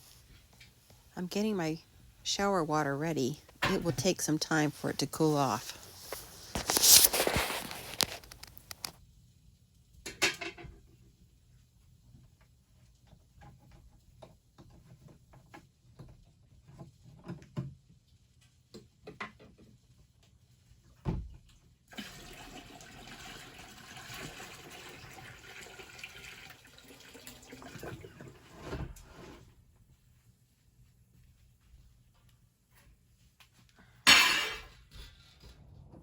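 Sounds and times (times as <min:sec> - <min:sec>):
water pouring into a container: 0:21.9 - 0:28.6.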